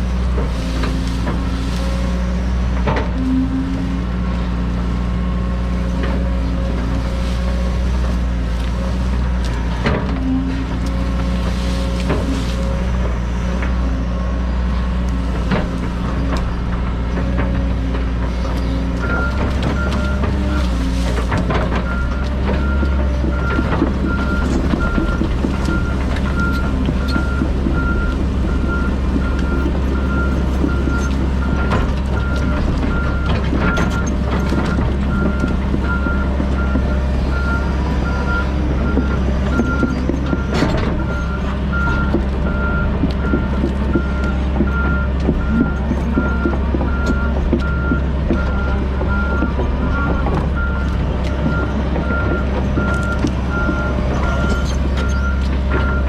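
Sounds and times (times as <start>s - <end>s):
brush and wood cracking: 0.0s - 13.9s, 14.5s - 36.9s
excavator diesel engine under load: 0.0s - 56.0s
reversing alarm beeping: 21.8s - 56.0s.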